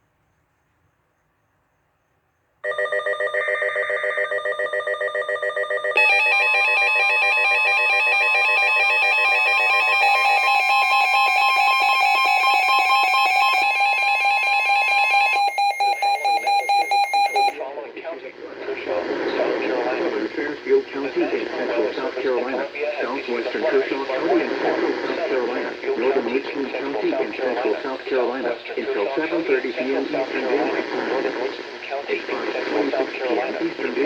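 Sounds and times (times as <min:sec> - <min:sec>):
rapidly pulsing electronic beeping: 0:05.6 - 0:17.6.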